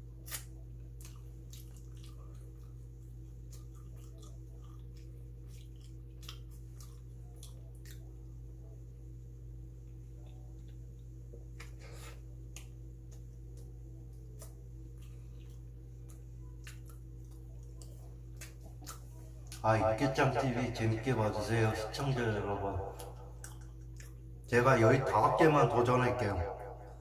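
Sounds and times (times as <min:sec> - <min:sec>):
steady low hum: 0:00.0 - 0:27.0
wet mouth chewing smacks: 0:00.3 - 0:02.8, 0:03.4 - 0:08.0, 0:12.5 - 0:19.6, 0:22.9 - 0:24.3.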